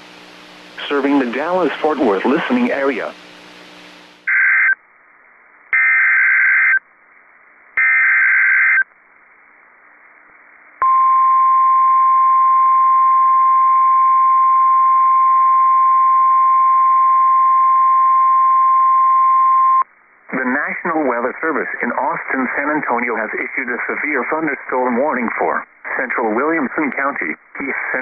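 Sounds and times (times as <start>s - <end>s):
screechy data header tones: 4.3s - 4.8s, 5.8s - 6.8s, 7.8s - 8.9s.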